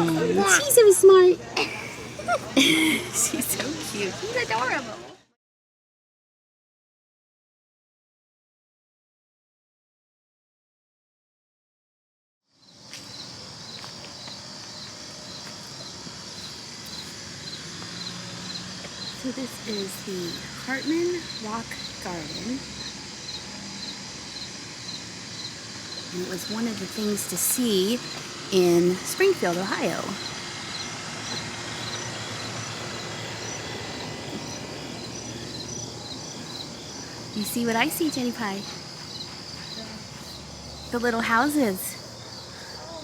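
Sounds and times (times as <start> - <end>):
high hiss of insects: 12.5 - 43.0.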